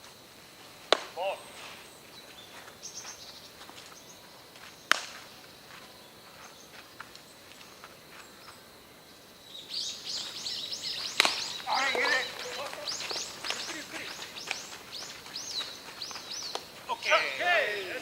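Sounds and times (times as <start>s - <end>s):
baseball bat crack: 0.8s - 1.6s, 4.9s - 5.3s, 11.1s - 15.2s, 16.1s - 16.8s
high chirps: 9.5s - 18.0s.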